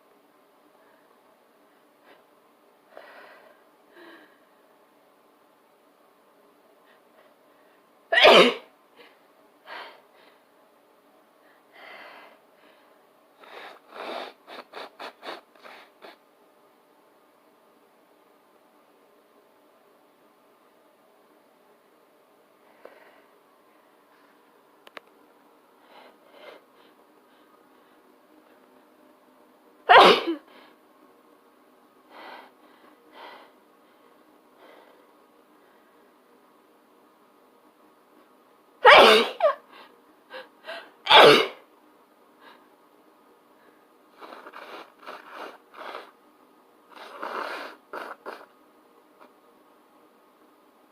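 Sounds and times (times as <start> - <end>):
person sneezing: 8.1 - 8.7, 29.9 - 30.5, 38.8 - 39.6, 41.1 - 41.6.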